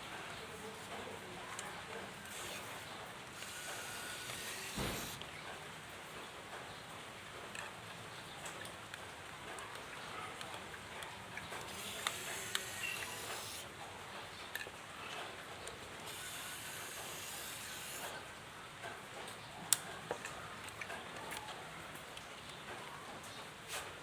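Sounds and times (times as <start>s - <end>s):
steady hiss: 0.0s - 5.7s, 11.6s - 13.8s, 16.0s - 18.3s.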